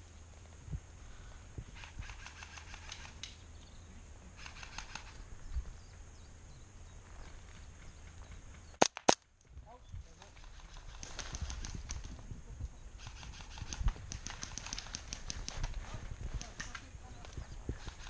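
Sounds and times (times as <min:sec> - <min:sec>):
wind rumble on microphone: 0:00.4 - 0:02.3, 0:03.0 - 0:08.5, 0:09.5 - 0:18.0
rapid fine clicking: 0:01.8 - 0:03.4, 0:04.4 - 0:05.2, 0:10.2 - 0:12.1, 0:13.0 - 0:16.9
loud sharp cracks: 0:08.8 - 0:09.3.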